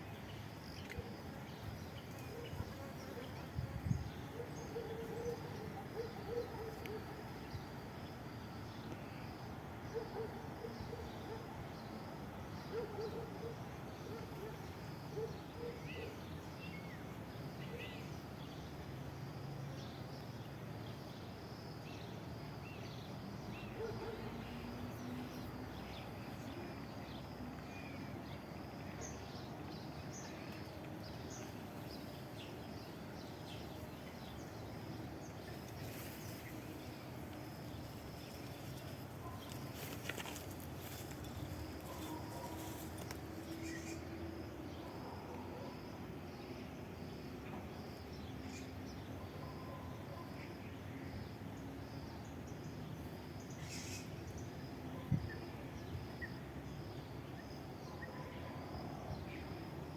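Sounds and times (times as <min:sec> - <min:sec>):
steady background hiss: 0:00.0 - 0:59.9
small birds chirping: 0:52.5 - 0:54.6.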